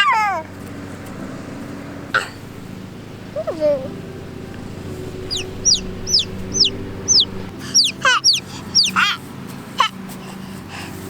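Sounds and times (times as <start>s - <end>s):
baby chick peeping: 3.3s - 10.0s.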